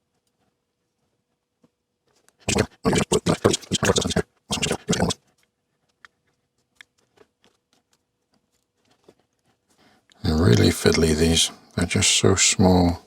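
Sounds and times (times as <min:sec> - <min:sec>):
scratchy scraping and rubbing: 0:02.4 - 0:05.4.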